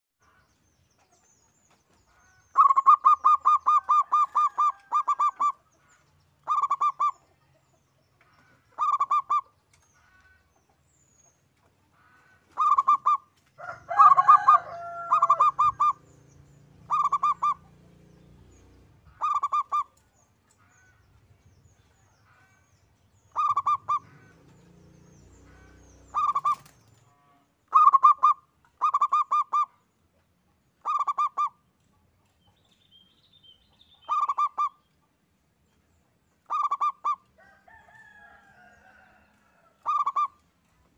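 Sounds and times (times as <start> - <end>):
dove cooing: 2.6 - 5.6, 6.4 - 7.2, 8.8 - 9.4, 12.5 - 13.2, 13.9 - 16.0, 16.9 - 17.9, 19.1 - 20.0, 23.3 - 24.3, 25.6 - 26.8, 27.7 - 29.7, 36.5 - 37.2, 39.8 - 40.4.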